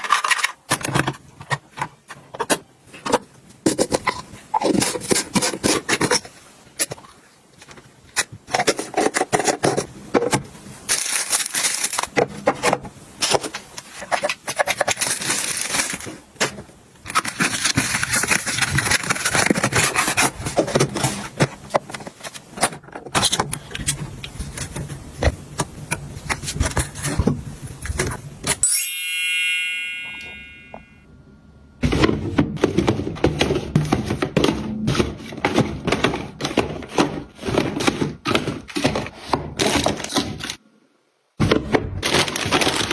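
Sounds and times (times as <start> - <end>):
packaging rustling and crinkling: 7.6 - 28.3, 31.8 - 40.6, 41.4 - 42.9.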